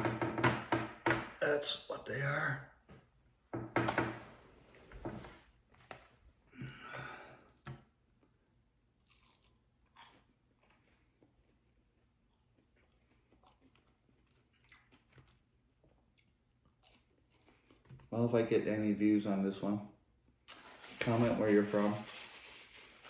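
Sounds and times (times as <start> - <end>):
crunchy bites: 9.0 - 10.9
person chewing food: 9.0 - 18.1.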